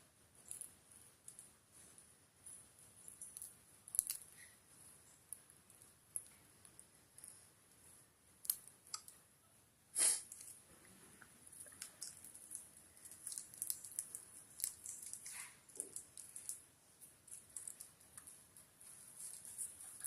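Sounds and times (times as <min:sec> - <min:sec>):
birds nibbling with clicks: 0:03.0 - 0:04.4, 0:11.5 - 0:20.0.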